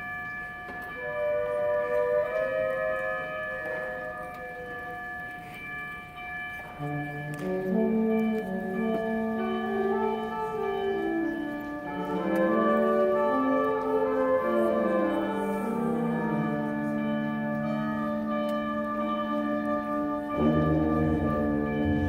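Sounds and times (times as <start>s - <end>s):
concert band playing: 7.2s - 22.0s.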